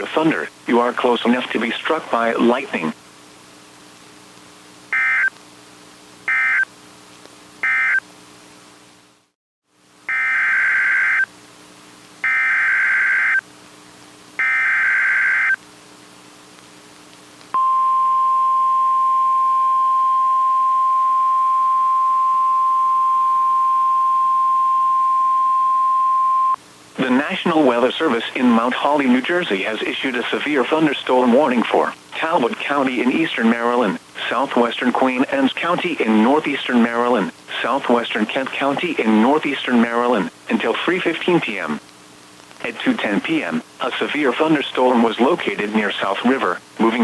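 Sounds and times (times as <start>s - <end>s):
faint hum: 0.0s - 47.0s
warning alarm tone: 5.0s - 5.3s, 6.3s - 6.7s, 7.6s - 8.0s, 10.1s - 11.3s, 12.2s - 13.4s, 14.4s - 15.6s, 17.6s - 26.6s.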